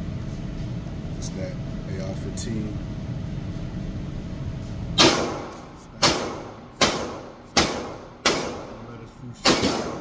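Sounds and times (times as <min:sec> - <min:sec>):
steady low hum: 0:00.0 - 0:10.0
rifle shots echoing indoors: 0:05.0 - 0:08.8, 0:09.4 - 0:10.0.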